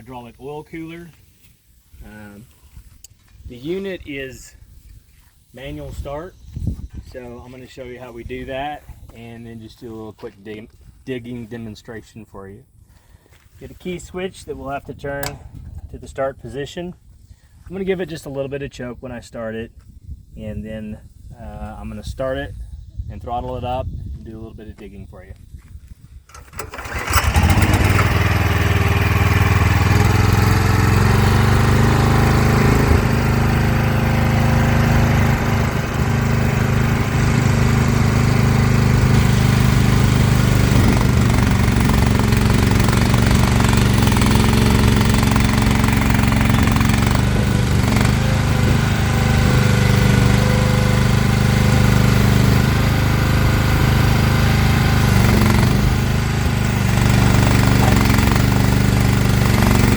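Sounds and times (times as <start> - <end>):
small engine starting and running: 26.2 - 59.9.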